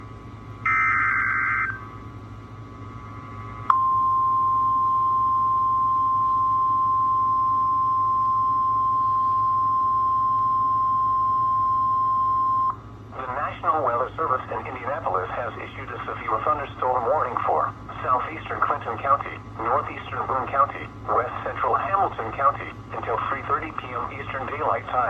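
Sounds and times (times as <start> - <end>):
high-pitched alarm tone: 0.6 - 2.0.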